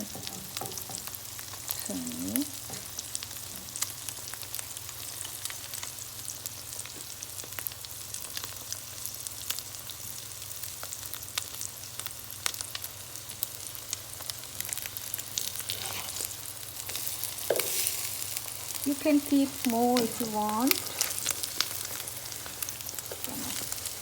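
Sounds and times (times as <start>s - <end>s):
bread sizzling in a pan: 0.0s - 24.0s.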